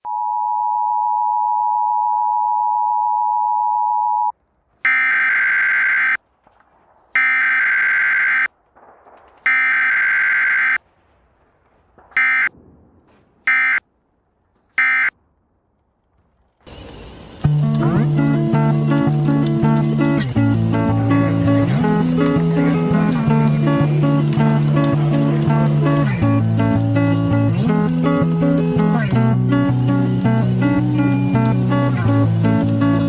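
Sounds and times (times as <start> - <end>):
electronic beeping: 30.2 - 33.0.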